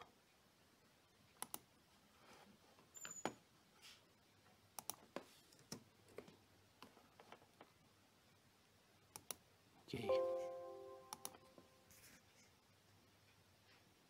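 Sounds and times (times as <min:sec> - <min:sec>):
computer mouse and keyboard clicks: 0:01.4 - 0:01.7, 0:04.8 - 0:07.4, 0:09.1 - 0:09.4.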